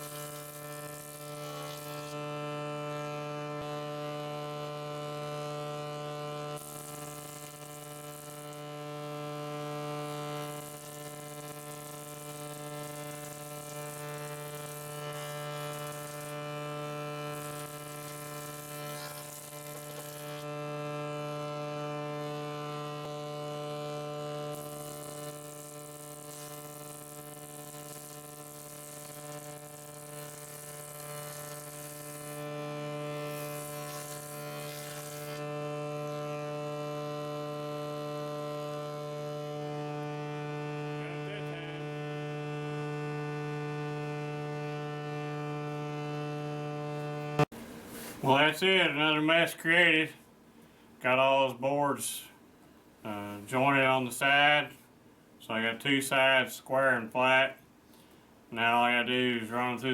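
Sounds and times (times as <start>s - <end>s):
jointer motor humming: 0.0s - 47.8s.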